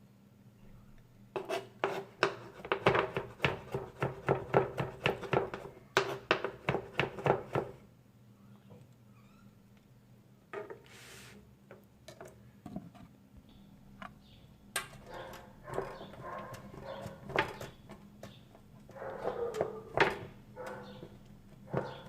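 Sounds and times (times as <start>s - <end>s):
short hiss: 10.9s - 11.5s.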